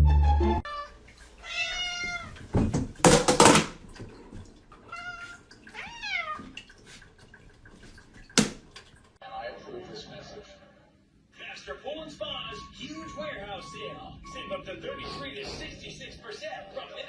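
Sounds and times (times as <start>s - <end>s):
cat meowing: 0.6s - 2.4s, 4.9s - 6.6s.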